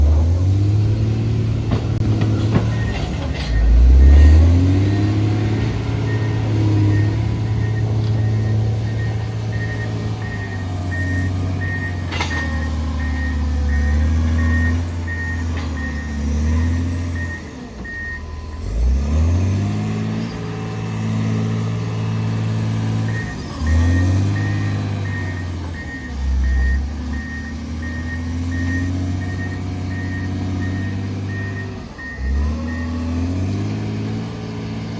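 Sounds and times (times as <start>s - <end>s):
diesel engine working: 0.0s - 34.9s
reversing alarm beeps: 2.6s - 5.4s, 6.0s - 19.4s, 23.0s - 33.0s.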